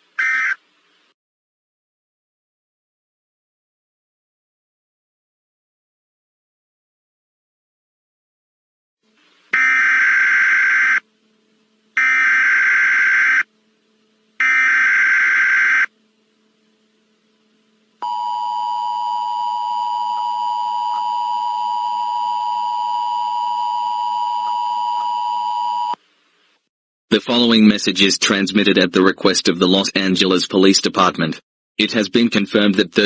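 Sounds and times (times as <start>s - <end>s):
two-tone attention signal: 18.0s - 26.0s.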